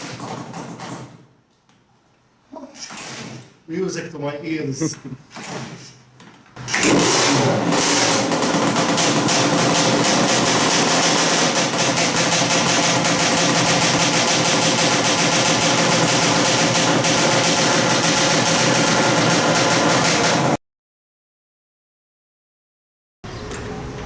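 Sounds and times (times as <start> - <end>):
two-stroke engine running: 6.6 - 20.6.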